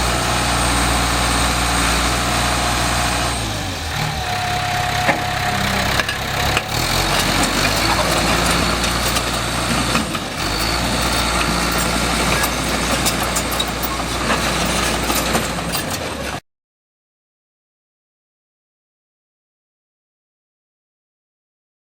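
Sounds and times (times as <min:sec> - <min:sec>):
bulldozer diesel engine running: 0:00.0 - 0:16.4.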